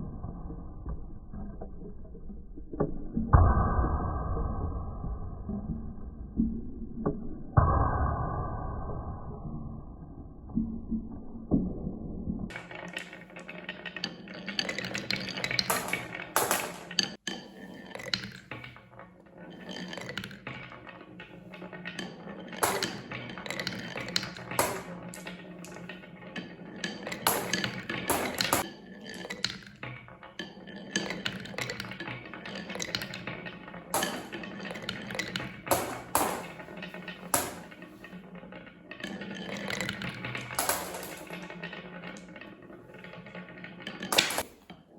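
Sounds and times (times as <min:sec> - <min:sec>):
marbles rattling on wooden run: 0:12.5 - 0:44.9.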